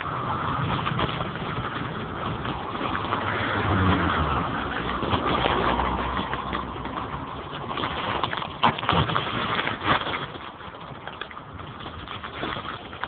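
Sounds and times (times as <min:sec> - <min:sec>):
deep rumble: 0:00.0 - 0:09.8
floodwater rushing: 0:00.0 - 0:13.0.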